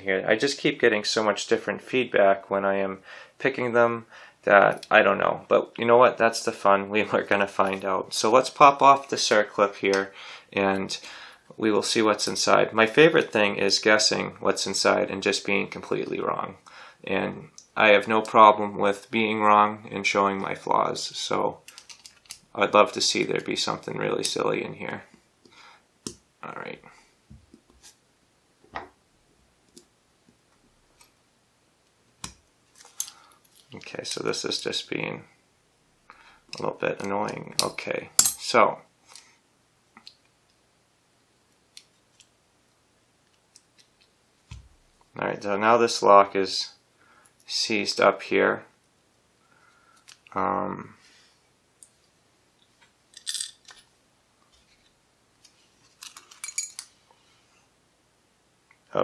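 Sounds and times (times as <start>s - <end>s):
metal lock parts clinking: 53.1s - 53.9s, 55.9s - 56.9s.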